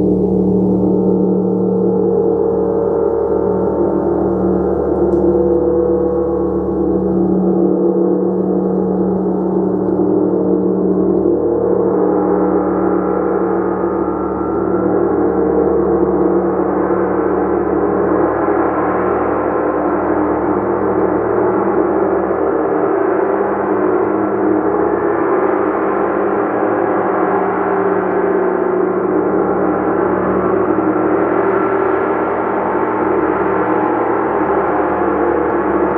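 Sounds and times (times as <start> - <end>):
gong played: 0.0 - 9.8.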